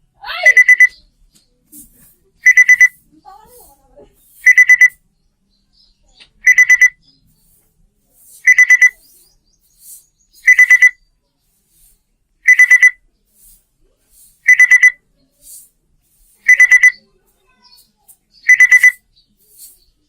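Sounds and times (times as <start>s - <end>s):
quick high alarm beeps: 0.4s - 1.0s, 2.4s - 3.0s, 4.4s - 5.0s, 6.4s - 7.0s, 8.4s - 9.0s, 10.4s - 11.0s, 12.4s - 13.0s, 14.4s - 15.0s, 16.4s - 17.0s, 18.4s - 19.0s.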